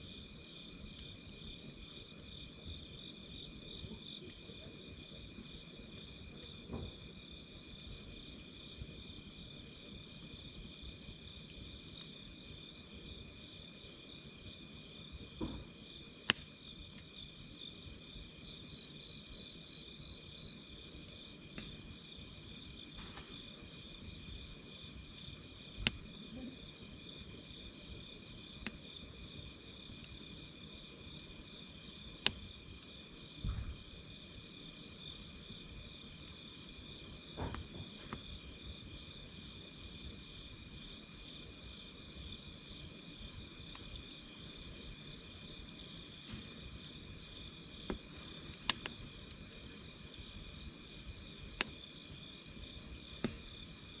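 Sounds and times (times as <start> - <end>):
campfire crackling and popping: 0.0 - 54.0
crickets chirring: 0.0 - 54.0.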